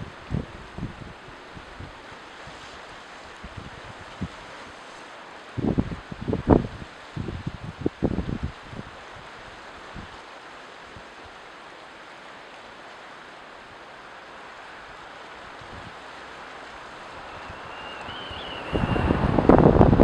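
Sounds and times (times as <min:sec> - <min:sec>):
ocean waves breaking: 0:09.4 - 0:20.0.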